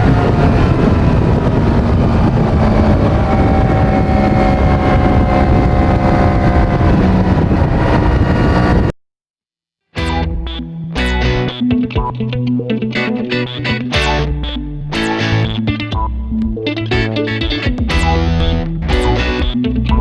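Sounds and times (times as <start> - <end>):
motorcycle engine running: 0.0 - 8.9
wind noise: 0.0 - 9.0
music: 10.0 - 20.0.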